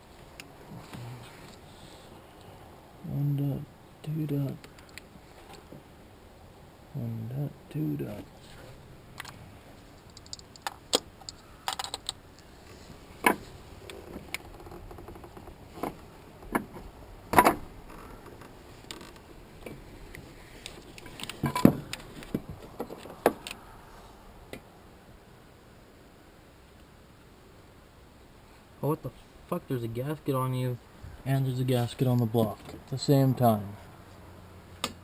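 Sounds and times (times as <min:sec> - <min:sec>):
metal tools clinking and clanking: 0:21.1 - 0:21.8.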